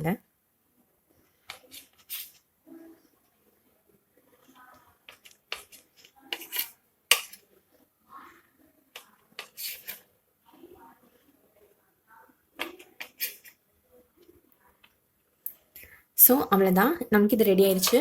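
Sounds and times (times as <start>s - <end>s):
knife cutting bread: 4.6s - 7.4s.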